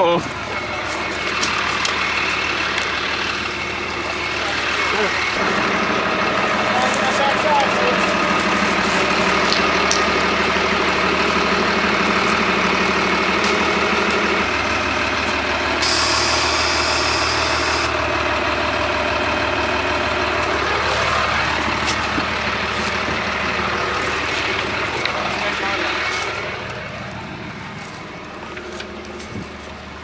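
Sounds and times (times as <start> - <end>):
diesel truck engine running: 0.0 - 30.0
air hissing: 15.8 - 17.9.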